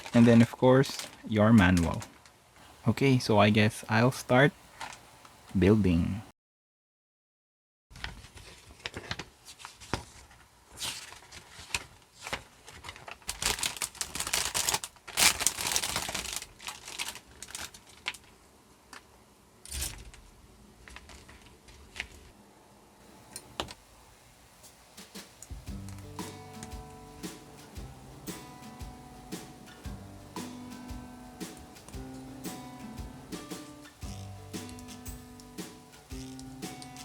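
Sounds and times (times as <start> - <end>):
plastic packaging crinkling: 0.0 - 2.3, 8.0 - 19.0.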